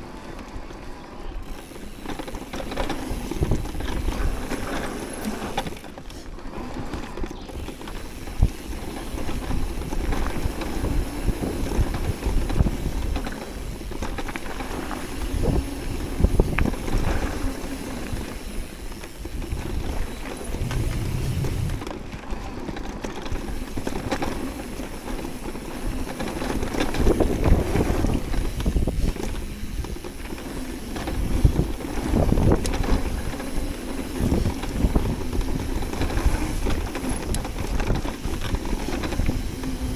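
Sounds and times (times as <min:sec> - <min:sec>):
bike tyres on dirt: 0:00.0 - 0:39.9
bike knocking and rattling: 0:00.2 - 0:39.9
wind buffeting microphone: 0:03.1 - 0:04.8, 0:15.2 - 0:22.2, 0:26.9 - 0:30.1, 0:30.9 - 0:39.9.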